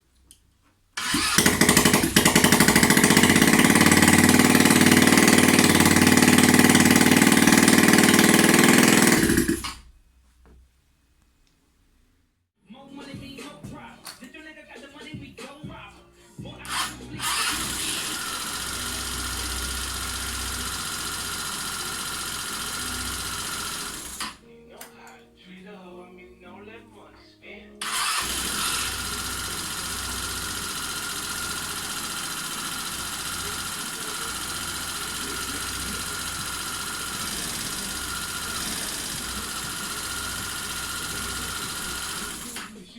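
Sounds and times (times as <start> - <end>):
scooter engine idling: 1.0 - 9.8, 16.7 - 24.2, 27.8 - 42.7.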